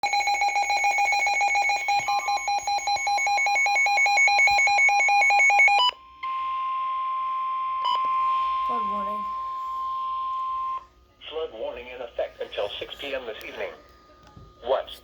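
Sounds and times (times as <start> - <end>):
steady warning alarm tone: 0.0 - 10.8.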